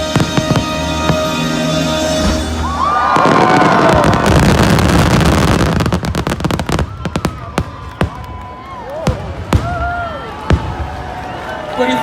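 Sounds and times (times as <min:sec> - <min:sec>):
show music: 0:00.0 - 0:04.8
fireworks banging: 0:00.0 - 0:11.6
firework crackle: 0:02.3 - 0:11.6
crowd cheering: 0:02.4 - 0:12.0.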